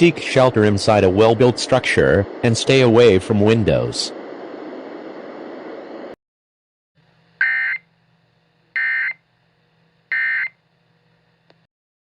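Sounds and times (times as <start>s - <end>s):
digital data tone bursts: 8.8s - 9.2s.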